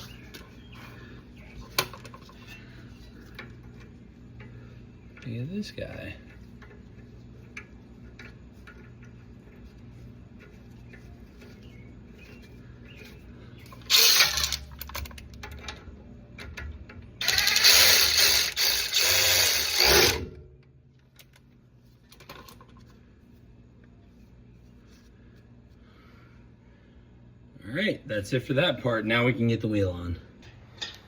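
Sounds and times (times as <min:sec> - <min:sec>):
power tool motor running: 0:13.8 - 0:14.7, 0:17.2 - 0:20.3.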